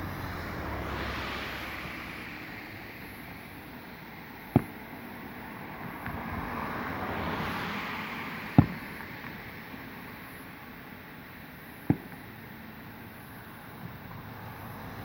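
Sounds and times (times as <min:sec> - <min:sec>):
rushing background noise: 0:00.0 - 0:15.0
firework shells booming: 0:04.4 - 0:06.3, 0:08.4 - 0:09.5, 0:11.8 - 0:12.5.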